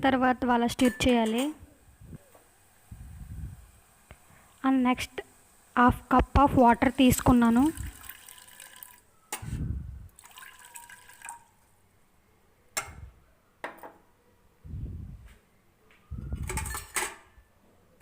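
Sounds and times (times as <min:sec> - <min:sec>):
cup clinking against a pan: 0:00.8 - 0:01.6
water pouring into a pan: 0:06.9 - 0:09.1, 0:10.2 - 0:11.6.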